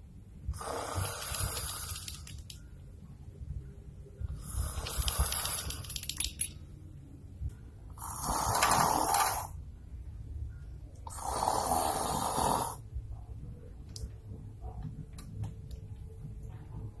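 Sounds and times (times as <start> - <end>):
man snoring: 8.0 - 9.6, 11.1 - 12.8.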